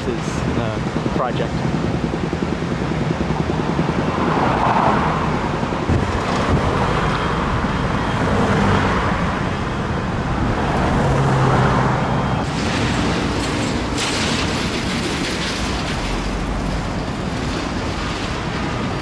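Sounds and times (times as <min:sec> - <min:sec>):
cars passing by: 0:04.1 - 0:13.9.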